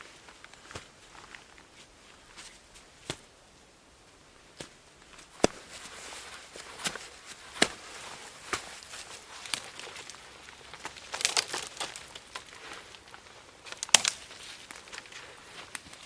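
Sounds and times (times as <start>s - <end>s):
twigs snapping: 4.6s - 16.0s
leaf litter rustling: 5.0s - 16.0s.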